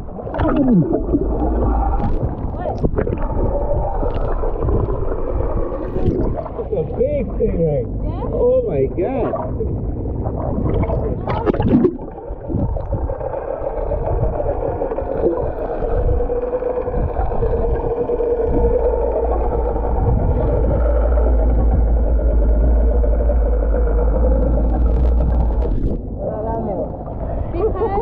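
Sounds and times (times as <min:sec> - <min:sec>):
motorboat engine droning: 0:00.0 - 0:28.0.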